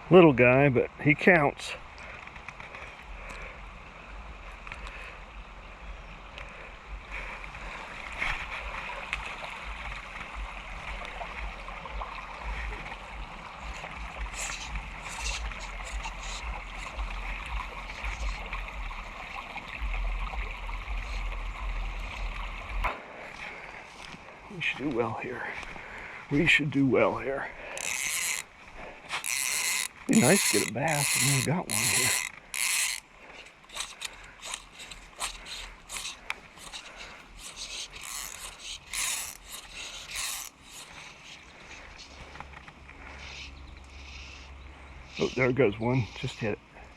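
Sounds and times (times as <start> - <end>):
creek water running: 0.0 - 46.9
fly reel ratchet clicking: 13.6 - 17.3, 27.7 - 28.5, 29.1 - 41.4.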